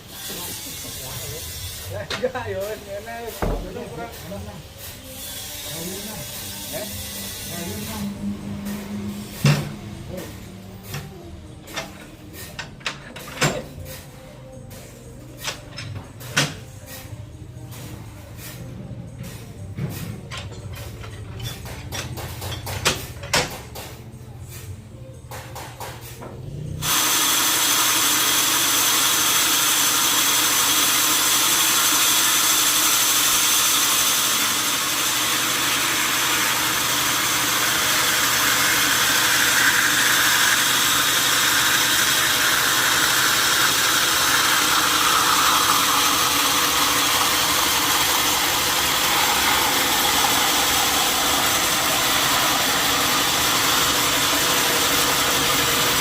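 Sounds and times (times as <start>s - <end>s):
sawmill machinery running: 0.0s - 13.3s, 25.3s - 56.0s.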